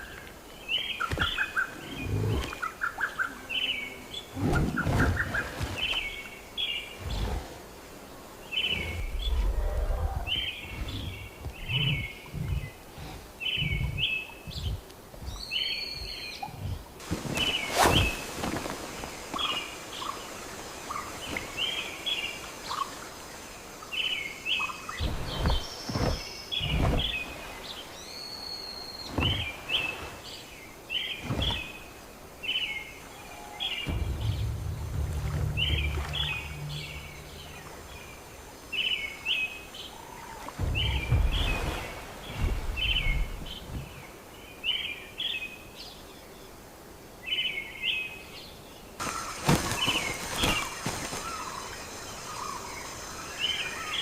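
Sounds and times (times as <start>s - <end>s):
bird chirping: 8.5s - 18.2s, 19.3s - 45.7s
dull thuds: 33.8s - 38.2s, 40.5s - 44.0s
low rumble: 33.9s - 39.0s.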